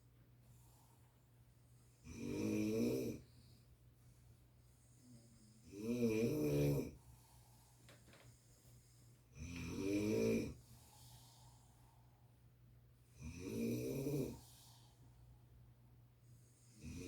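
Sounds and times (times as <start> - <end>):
person snoring: 5.0 - 7.0, 9.4 - 10.6, 13.2 - 14.6.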